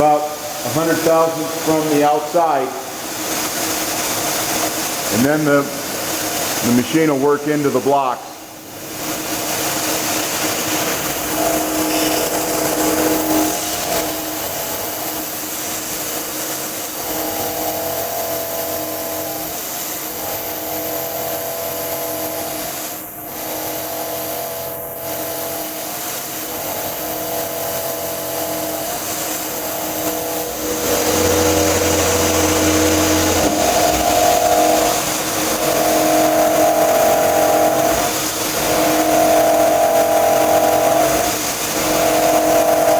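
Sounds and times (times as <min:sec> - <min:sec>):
noisy hiss: 0:00.0 - 0:42.9
milling machine cutting whine: 0:09.1 - 0:42.9.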